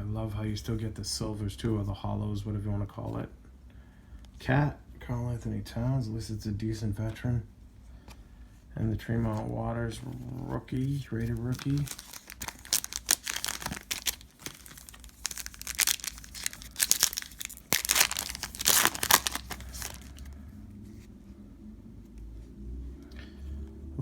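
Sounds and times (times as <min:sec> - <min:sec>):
foil wrapper crinkling: 0:10.8 - 0:20.4.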